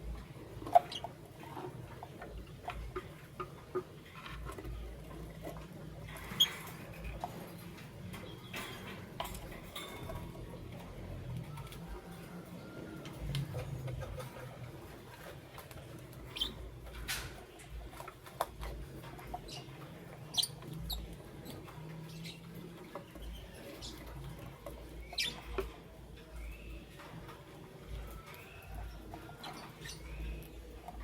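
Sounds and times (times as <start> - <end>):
lovebirds chirping: 16.1 - 16.8, 19.2 - 31.0.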